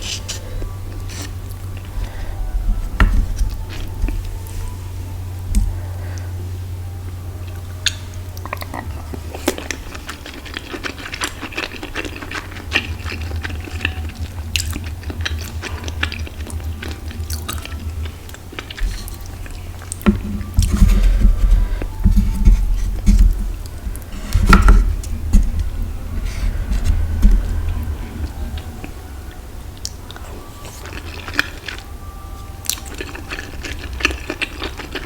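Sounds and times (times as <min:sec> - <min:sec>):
steady low hum: 0:00.0 - 0:35.0
crunchy chewing and biting: 0:07.4 - 0:29.0, 0:29.8 - 0:35.0.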